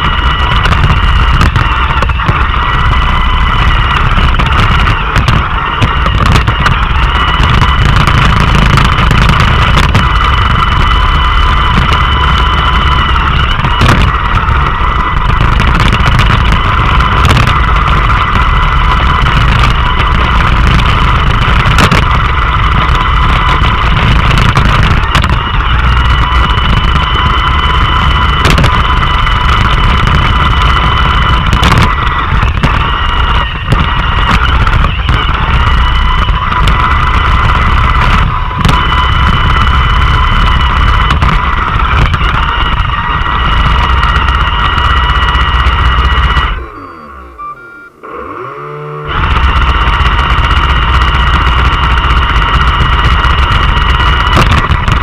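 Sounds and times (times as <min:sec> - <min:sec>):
robot vacuum fan whine: 0:25.4 - 0:55.0.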